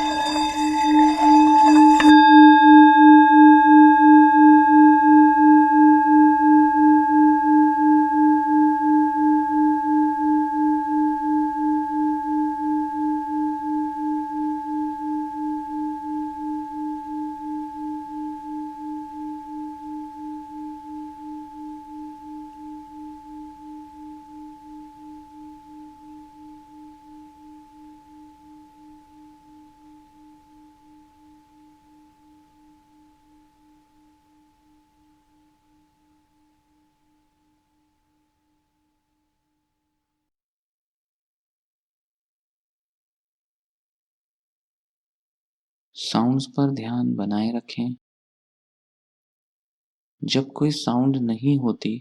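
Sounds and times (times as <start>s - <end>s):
rim scraping on singing bowl: 0.0s - 35.6s
singing bowl ringing hum: 0.0s - 37.9s.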